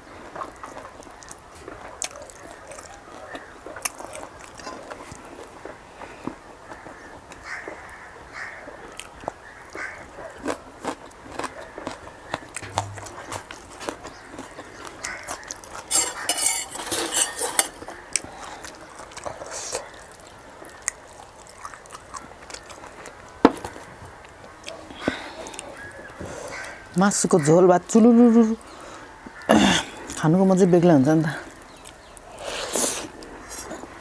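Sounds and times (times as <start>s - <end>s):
sharp knock: 12.6s - 13.4s
utensils clinking against dishes: 15.9s - 18.0s.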